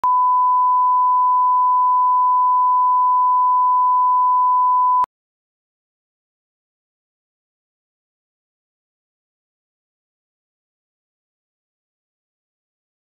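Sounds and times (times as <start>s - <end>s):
pure test tone beep: 0.0s - 5.1s.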